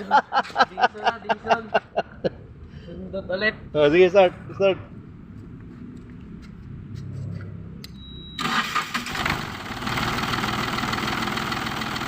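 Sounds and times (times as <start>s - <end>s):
diesel engine starting and running: 6.9s - 12.0s.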